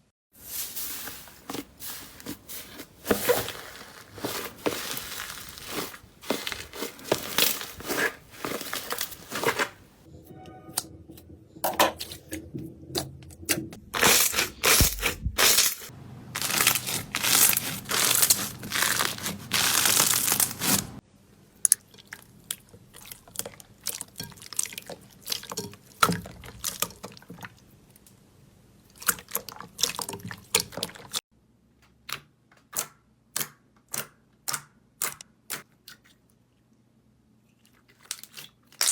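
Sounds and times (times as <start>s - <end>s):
slime crackling and crunching: 1.4s - 9.9s, 14.0s - 21.0s.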